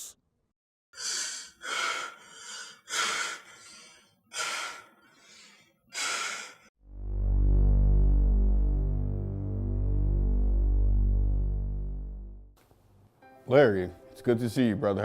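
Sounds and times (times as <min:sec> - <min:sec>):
person breathing heavily: 0:01.0 - 0:06.7.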